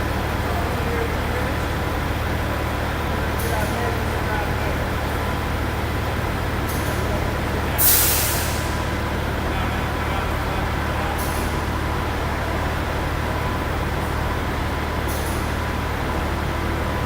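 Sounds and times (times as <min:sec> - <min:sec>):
short hiss: 0:07.8 - 0:08.8.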